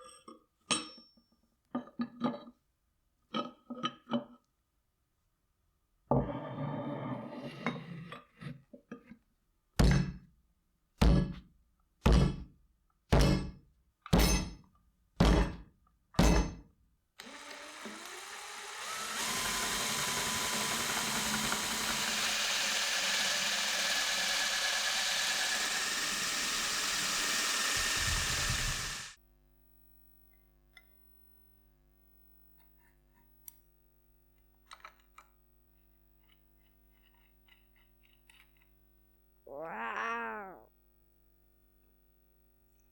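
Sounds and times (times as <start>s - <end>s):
power tool running: 17.2s - 29.2s.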